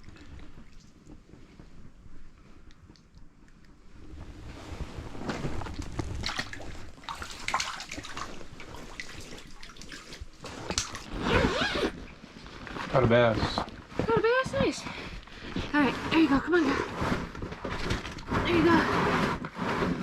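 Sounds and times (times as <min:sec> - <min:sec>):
water sloshing and splashing: 0:00.0 - 0:01.8, 0:04.4 - 0:14.0, 0:17.3 - 0:18.8.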